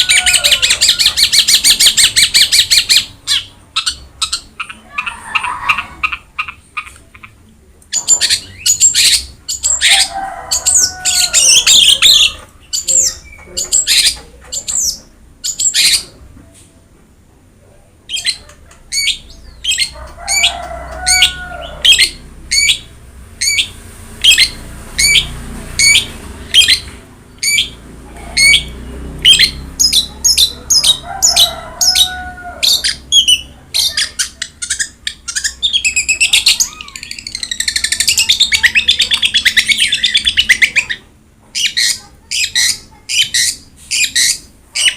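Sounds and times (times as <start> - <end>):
bird warbling phrases: 0.0 - 16.2, 18.1 - 44.9.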